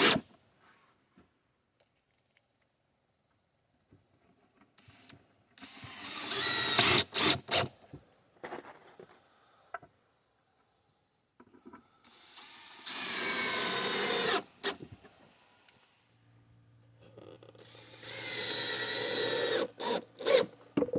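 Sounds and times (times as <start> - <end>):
power tool motor whine: 17.6 - 20.6.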